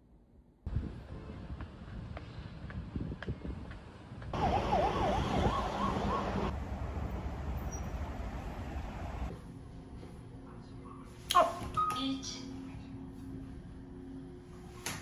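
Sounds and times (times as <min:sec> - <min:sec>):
street traffic: 0:00.7 - 0:09.9
siren yelping: 0:04.4 - 0:06.5.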